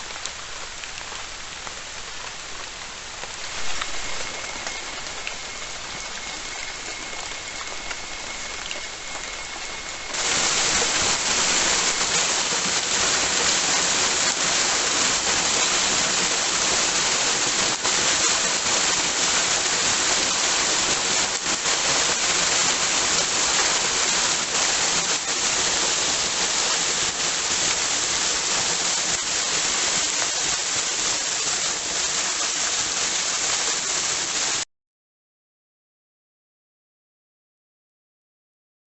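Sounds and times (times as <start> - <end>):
rain falling in forest: 0.0 - 34.7
faint high tone: 3.5 - 10.2.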